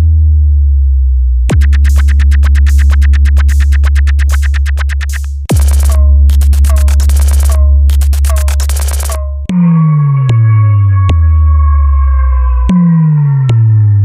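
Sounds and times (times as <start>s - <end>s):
sub-bass drone: 0.0s - 14.0s
drum-machine hits: 1.5s - 9.5s
electronic dance music: 1.5s - 9.6s.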